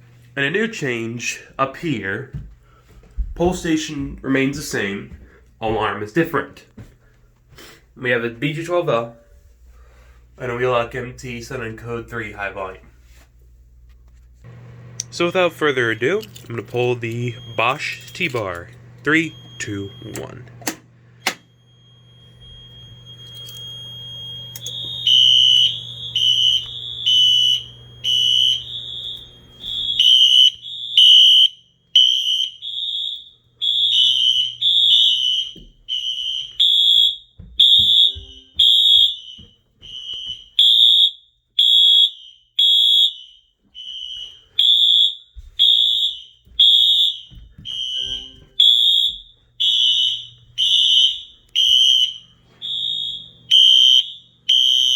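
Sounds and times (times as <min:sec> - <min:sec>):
fire alarm horns beeping: 0:15.0 - 0:54.9.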